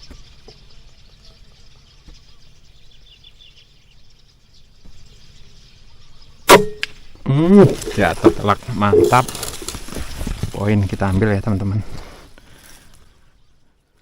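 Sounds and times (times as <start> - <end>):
faint bird chirps: 0.0 - 9.6
wind: 0.0 - 14.0
air rifle shot: 6.5 - 6.9.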